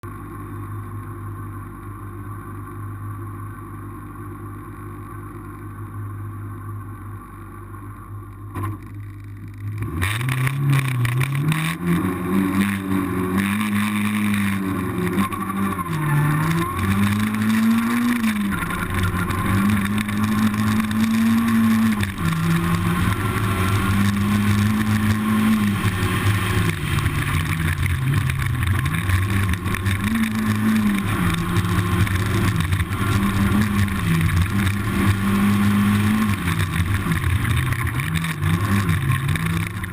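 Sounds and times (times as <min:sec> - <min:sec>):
rally car engine revving: 0:08.5 - 0:39.9.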